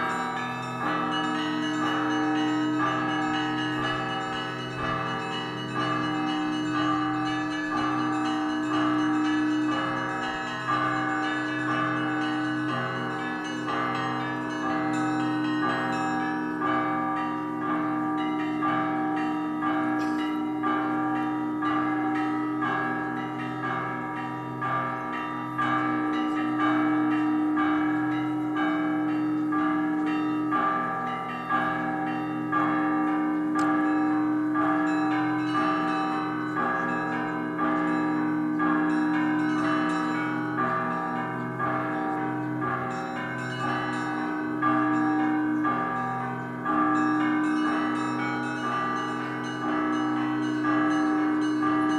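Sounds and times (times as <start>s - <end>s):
deep bells ringing: 0.0s - 51.9s.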